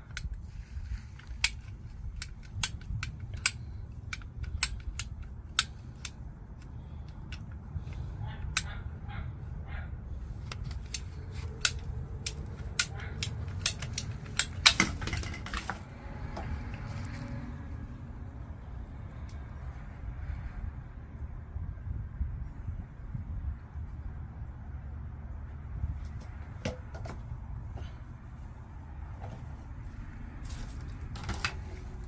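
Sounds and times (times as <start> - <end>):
tools and plastic pipe clicking: 0.0 - 0.4, 1.1 - 8.8, 10.4 - 16.8, 31.1 - 32.0
steady low rumble: 0.0 - 32.0.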